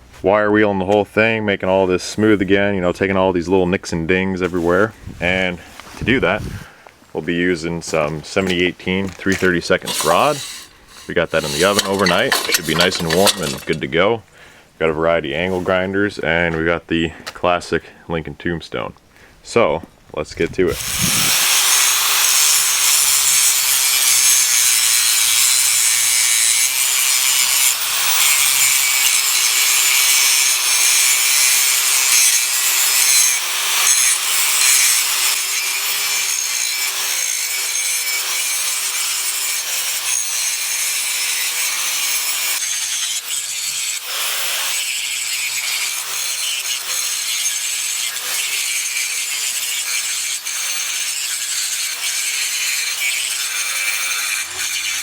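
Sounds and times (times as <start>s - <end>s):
angle grinder grinding steel: 7.8s - 14.0s, 20.6s - 55.0s.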